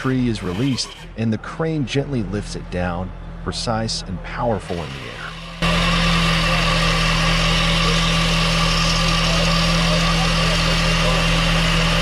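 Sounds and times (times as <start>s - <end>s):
engine running steadily: 2.4s - 12.0s.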